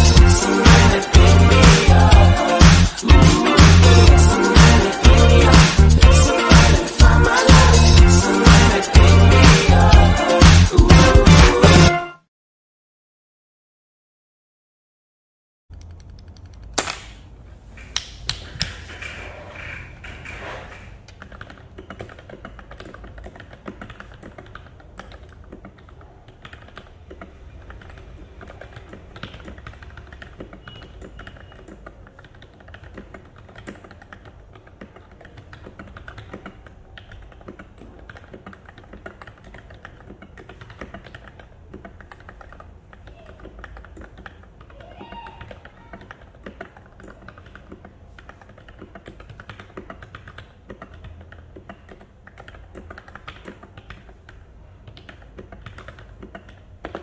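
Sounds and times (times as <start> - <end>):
mechanical keyboard typing: 15.7 - 17.1, 18.4 - 57.0.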